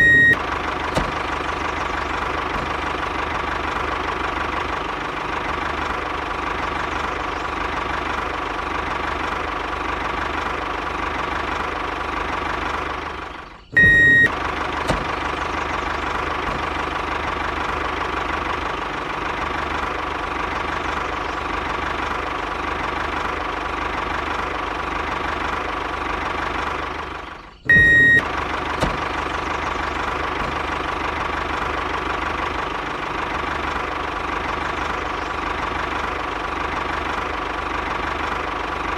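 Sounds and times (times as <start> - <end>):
short loud beep: 0.0 - 0.4, 13.8 - 14.3, 27.7 - 28.2.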